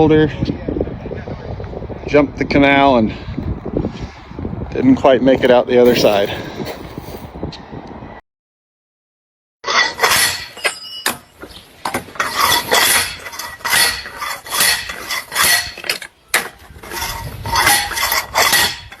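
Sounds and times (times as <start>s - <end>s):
metallic clanks and clinks: 5.4s - 7.3s.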